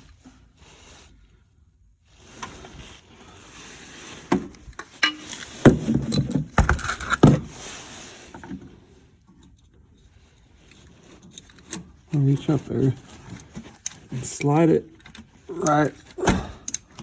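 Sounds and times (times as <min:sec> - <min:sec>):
rustling and scraping: 0:00.0 - 0:16.2
metal hand tools clinking: 0:04.8 - 0:07.2.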